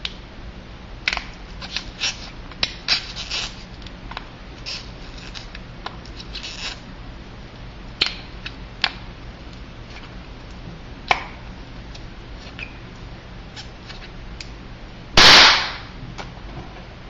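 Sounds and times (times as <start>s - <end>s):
balloon bang: 15.2s - 15.9s.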